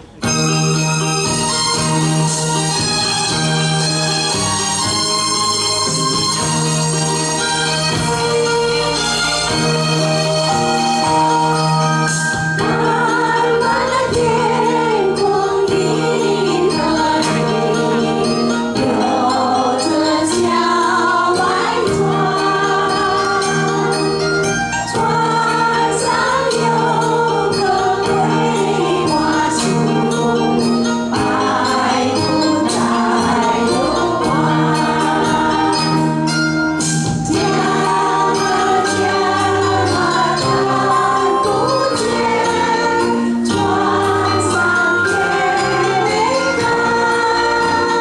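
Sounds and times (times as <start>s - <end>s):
choir singing: 0.0s - 48.0s
jingling percussion: 0.0s - 48.0s
musical accompaniment: 0.0s - 48.0s.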